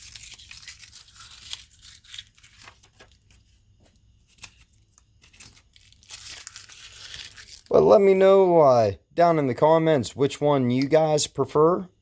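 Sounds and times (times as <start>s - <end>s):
paper rustling as knife slices: 0.0s - 3.6s.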